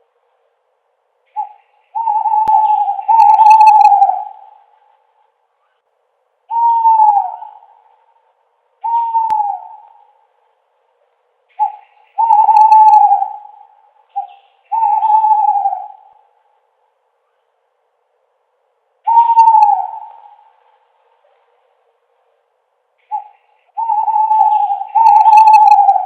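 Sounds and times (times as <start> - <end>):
owl hooting: 1.3 - 5.0, 6.5 - 10.4, 11.5 - 16.6, 19.0 - 21.5, 23.0 - 26.0.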